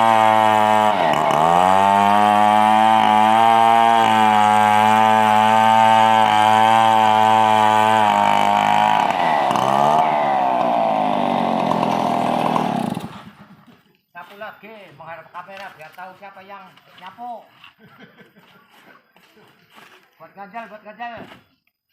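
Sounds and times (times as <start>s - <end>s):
engine-driven wood saw running: 0.0s - 13.5s.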